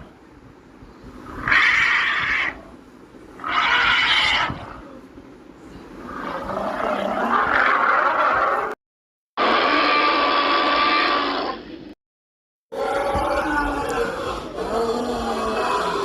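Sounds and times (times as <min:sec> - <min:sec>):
dinosaur roar: 0:06.2 - 0:08.8, 0:09.4 - 0:11.7, 0:12.7 - 0:16.0.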